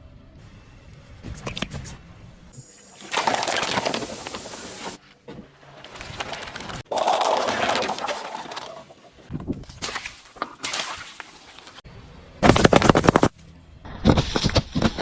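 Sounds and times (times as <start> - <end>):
objects crushed with crackling crunch: 3.0 - 5.0, 5.7 - 11.8, 12.4 - 15.0.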